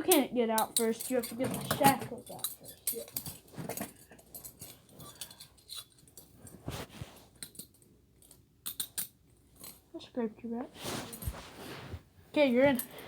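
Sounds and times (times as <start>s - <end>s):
handcuffs and chain clicking: 0.6s - 6.4s, 7.4s - 9.8s
rustling: 0.8s - 7.8s, 10.7s - 13.0s.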